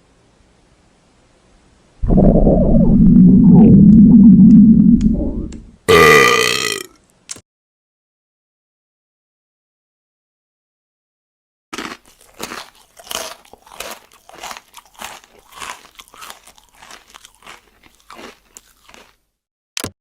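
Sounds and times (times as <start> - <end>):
crunching and chewing: 11.8 - 19.3.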